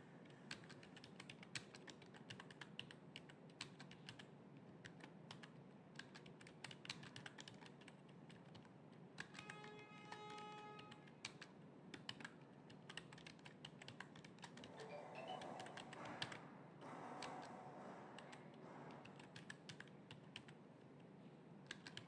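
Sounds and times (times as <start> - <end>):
faint keyboard typing: 0.2 - 22.0
steady multi-pitched tone: 14.7 - 16.2.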